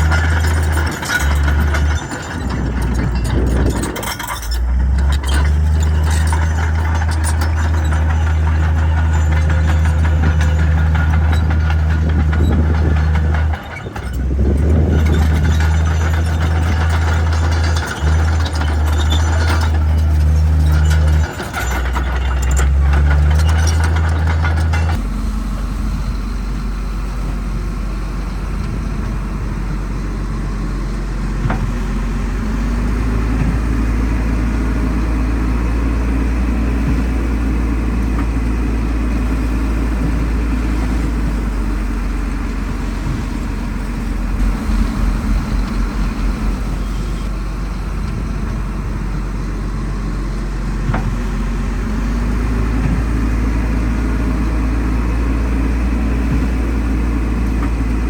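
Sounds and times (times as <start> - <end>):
heavy diesel engines running: 0.0 - 58.0
fast low pulsing: 42.6 - 49.0.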